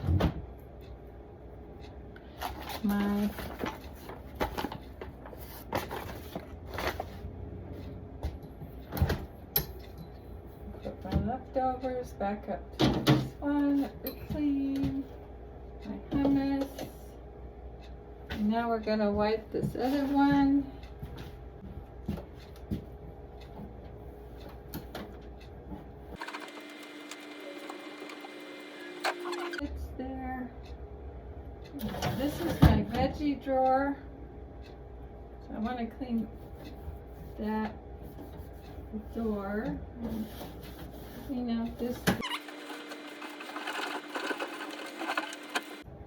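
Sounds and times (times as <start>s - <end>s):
refrigerator hum: 0.0s - 46.0s
cloth wiping a shelf: 40.1s - 41.4s
steady hum: 42.2s - 46.0s.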